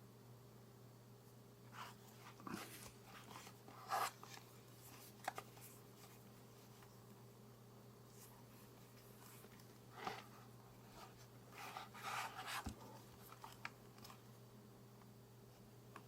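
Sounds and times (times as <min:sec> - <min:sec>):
low steady hum: 0:00.0 - 0:16.0
rustling scrapes: 0:08.1 - 0:13.6.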